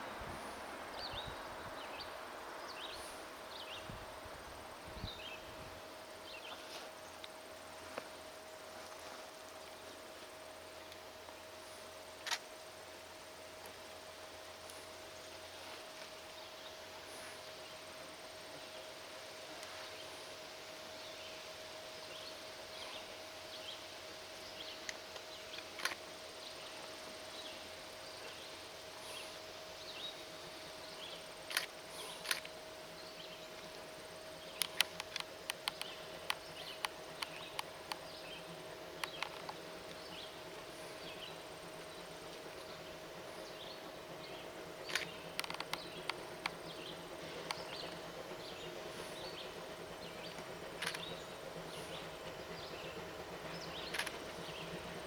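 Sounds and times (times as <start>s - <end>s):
faint steady hum: 0.0s - 55.0s
insects chirping: 22.2s - 55.0s
sharp clicks: 31.5s - 32.5s, 34.5s - 38.1s, 39.0s - 40.0s, 44.9s - 48.1s, 50.3s - 51.2s, 53.9s - 54.4s.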